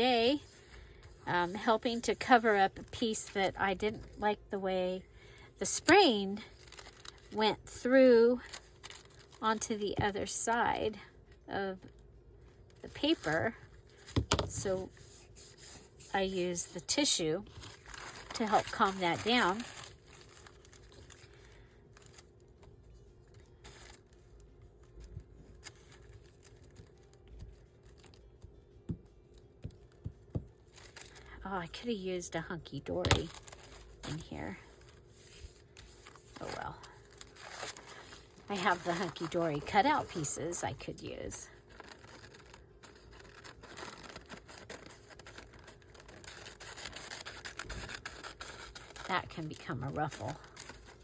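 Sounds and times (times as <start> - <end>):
paper scraps rustling: 5.7 - 7.4, 8.2 - 9.7, 13.0 - 22.2, 30.7 - 31.8, 32.7 - 51.0.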